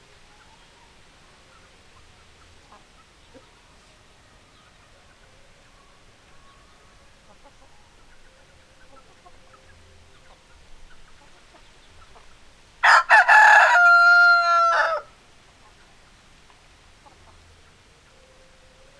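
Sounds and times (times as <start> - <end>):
faint hen clucks: 0.1 - 18.9
rooster crowing: 12.8 - 15.2.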